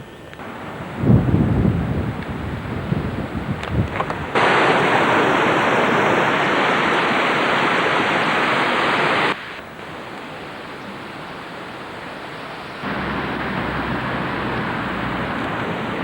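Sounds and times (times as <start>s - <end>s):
loud rushing water: 0.4s - 16.0s
low wind rumble: 0.4s - 16.0s.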